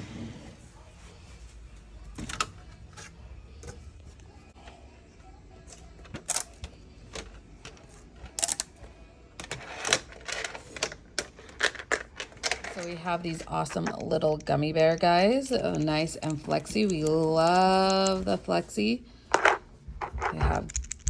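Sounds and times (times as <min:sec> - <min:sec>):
plastic figures clicking and clattering: 0:06.0 - 0:08.7, 0:09.4 - 0:18.4, 0:19.3 - 0:21.0.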